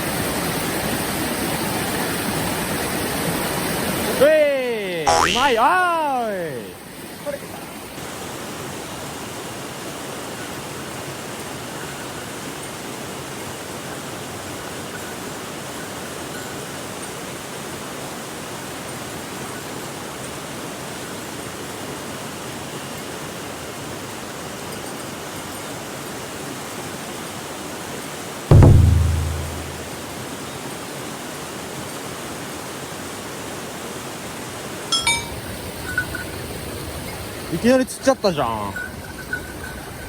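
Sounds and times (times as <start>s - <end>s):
stream water rushing: 32.8s - 38.8s.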